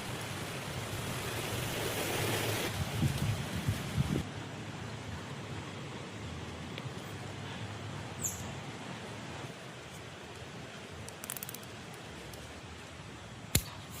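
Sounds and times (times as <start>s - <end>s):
outdoor background hiss: 0.0s - 14.0s
small clicks: 11.0s - 12.5s.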